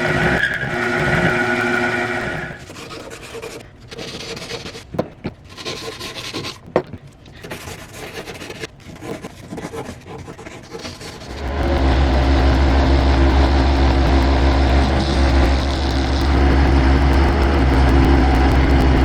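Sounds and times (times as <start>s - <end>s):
rubbing and scraping on metal: 0.0s - 6.7s, 7.3s - 19.0s
sharp clicks: 11.2s - 19.0s.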